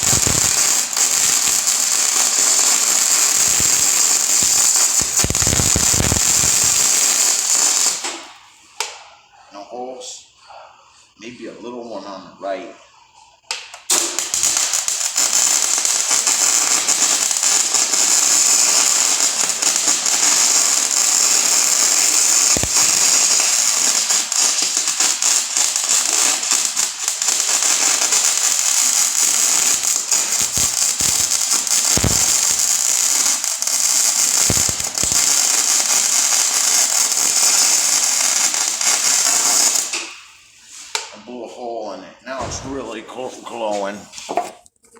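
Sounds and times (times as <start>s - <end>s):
welding arc hissing crackle: 0.0s - 9.0s, 13.5s - 41.1s
welding spatter pops: 0.0s - 9.0s, 13.5s - 40.2s.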